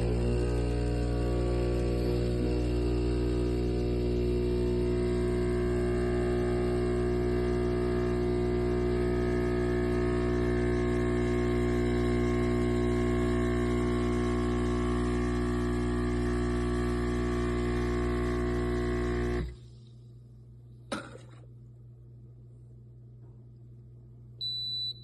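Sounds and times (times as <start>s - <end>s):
espresso machine buzzing: 0.0s - 19.6s.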